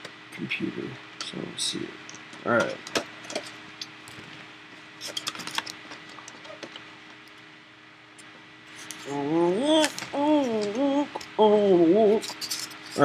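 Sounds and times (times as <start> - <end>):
person's wordless voice: 9.0 - 12.4.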